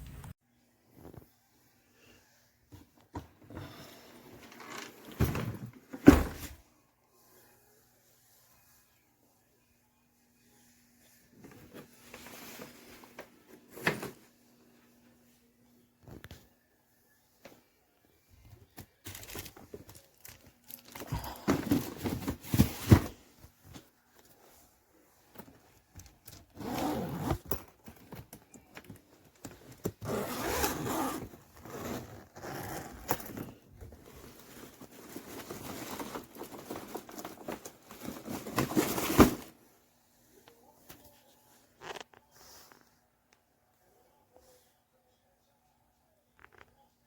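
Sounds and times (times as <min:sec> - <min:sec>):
suitcase rustling and scraping: 0:03.4 - 0:06.6, 0:26.2 - 0:39.6.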